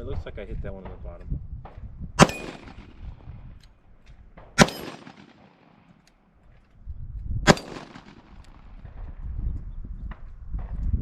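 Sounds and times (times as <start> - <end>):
pistol shots: 2.2 - 3.2, 4.4 - 6.1, 7.5 - 9.1.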